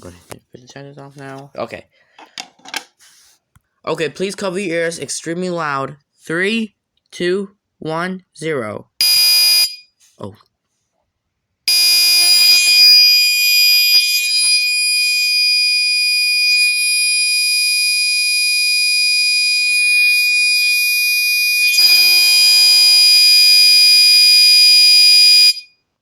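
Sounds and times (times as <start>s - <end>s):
fire alarm horn: 9.0s - 9.9s, 11.7s - 25.8s.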